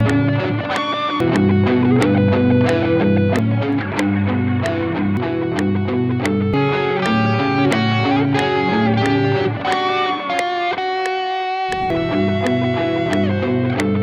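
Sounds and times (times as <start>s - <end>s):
plucked electric guitar melodies: 0.0s - 14.0s
low repeating bass notes: 11.7s - 14.0s.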